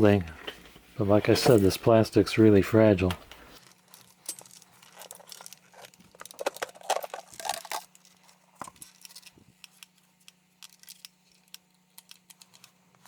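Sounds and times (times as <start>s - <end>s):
plastic parts clicking and tapping: 3.9s - 13.0s.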